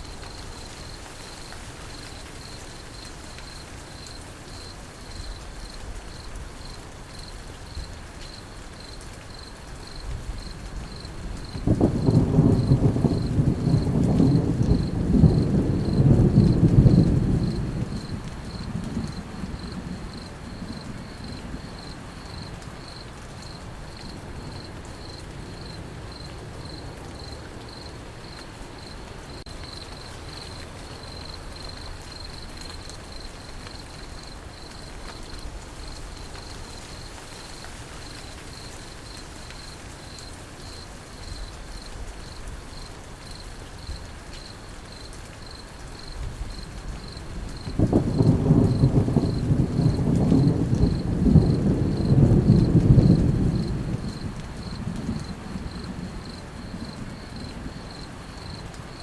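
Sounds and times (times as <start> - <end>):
crickets chirping: 0.0 - 59.0
steady rain falling: 0.0 - 59.0
thunder rumbling: 10.1 - 23.0, 46.2 - 59.0.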